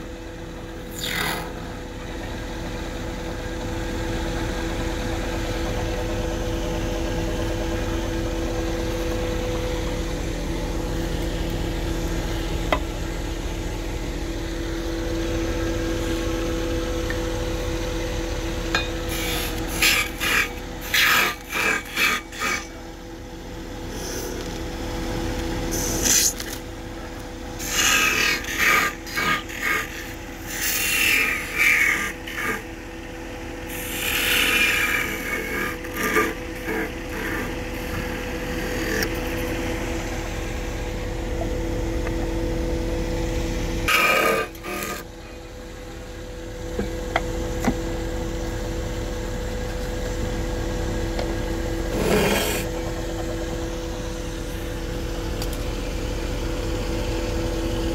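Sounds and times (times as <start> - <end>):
wood lathe motor hum: 0.0 - 46.1, 51.1 - 57.9
turning tool scraping wood: 0.9 - 1.6, 18.8 - 22.8, 25.7 - 26.6, 27.6 - 32.7, 33.7 - 39.7, 43.8 - 45.2, 51.9 - 52.8.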